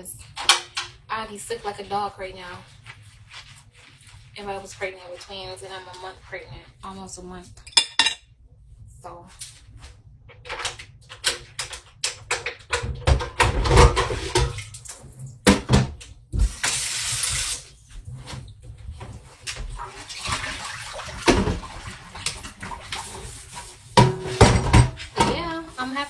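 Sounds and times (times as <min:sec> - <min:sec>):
dishes and utensils clattering: 0:07.6 - 0:08.2, 0:12.3 - 0:14.7, 0:20.3 - 0:25.6
kitchen tap running: 0:11.5 - 0:17.8, 0:19.4 - 0:26.0.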